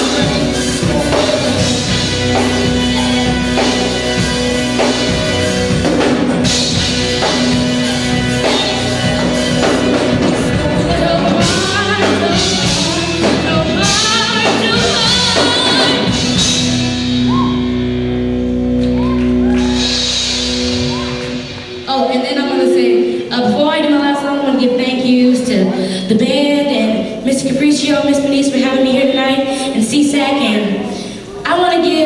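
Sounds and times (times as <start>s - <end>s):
person singing: 0.0s - 6.0s, 7.2s - 16.9s
drum kit beat: 0.0s - 22.8s
live band music: 0.0s - 32.0s.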